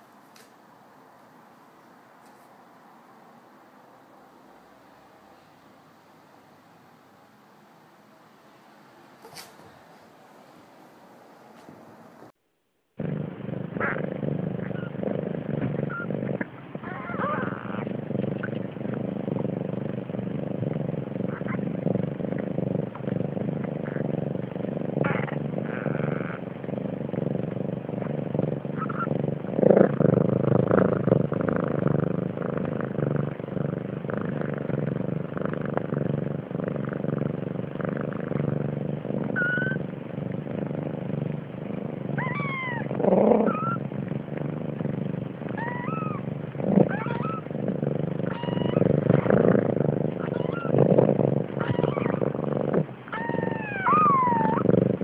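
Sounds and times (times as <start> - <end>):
cat meowing: 42.2 - 42.9, 45.6 - 46.2, 46.9 - 47.4, 48.3 - 48.8, 50.2 - 50.7, 51.6 - 52.2, 53.2 - 54.6.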